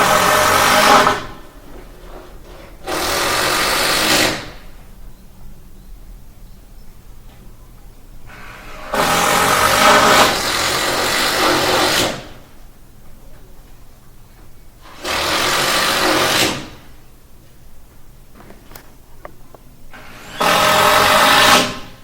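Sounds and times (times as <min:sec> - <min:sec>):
electric power tool running: 0:00.0 - 0:01.5, 0:08.3 - 0:12.2, 0:19.9 - 0:21.9.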